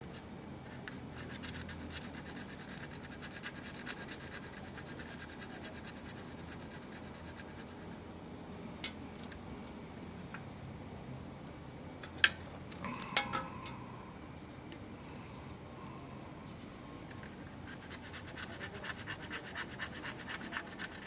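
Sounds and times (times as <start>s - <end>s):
hands and tools scratching: 0.0s - 8.1s, 17.2s - 21.0s.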